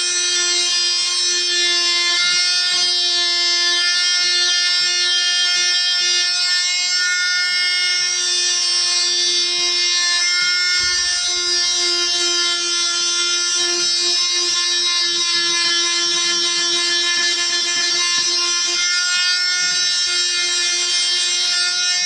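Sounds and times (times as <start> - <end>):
oscillating tool sanding wood: 7.9 - 22.0.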